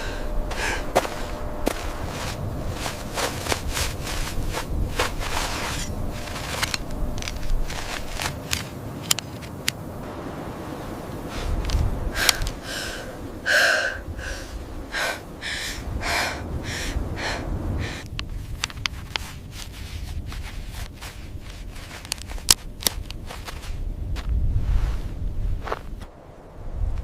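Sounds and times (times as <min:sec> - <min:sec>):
low rumble: 0:00.0 - 0:08.5.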